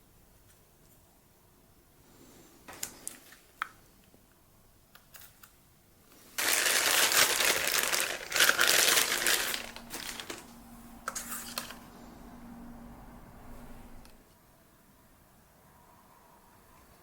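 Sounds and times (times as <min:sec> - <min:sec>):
packaging crinkling: 0:06.4 - 0:11.9.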